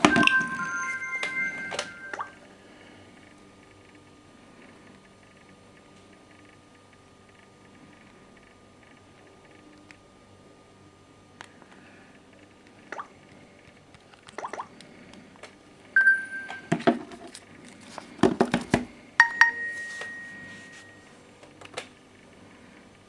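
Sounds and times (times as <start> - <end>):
bright phone tone: 0.0 - 2.4, 16.0 - 17.2, 19.2 - 21.2
short electronic beep: 0.0 - 2.4, 16.0 - 16.9
taps and knocks on phones: 16.0 - 17.2, 18.2 - 20.2.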